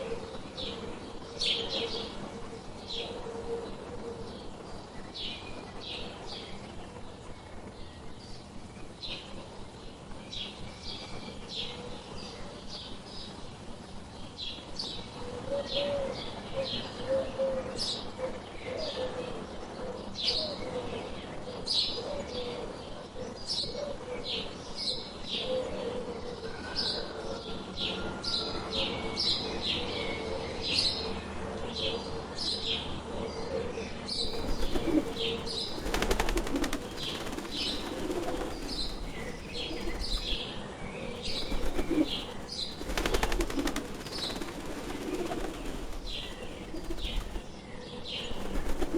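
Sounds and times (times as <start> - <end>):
birds chirping: 34.2 - 48.9
wings flapping: 34.2 - 48.9
low wavering cooing: 34.3 - 40.5.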